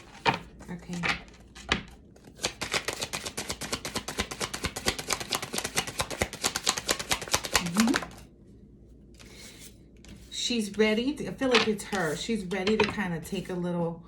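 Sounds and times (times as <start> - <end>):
cards being shuffled: 0.0 - 8.2, 11.5 - 12.9.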